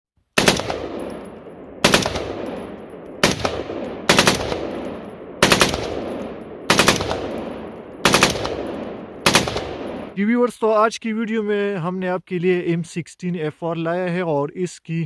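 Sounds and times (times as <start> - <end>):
rifle firing bursts: 0.4 - 10.2.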